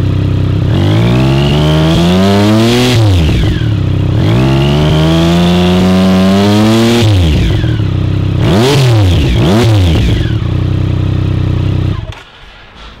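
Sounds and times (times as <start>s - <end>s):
motorcycle engine revving: 0.0s - 12.4s.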